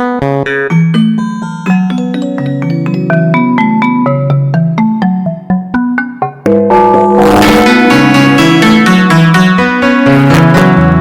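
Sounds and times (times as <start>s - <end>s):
analog synthesizer bass sequence: 6.4s - 10.7s.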